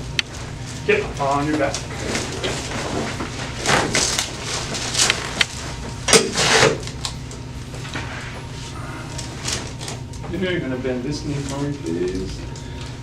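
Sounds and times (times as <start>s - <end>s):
rustling and creaking on padded table: 0.3s - 5.9s.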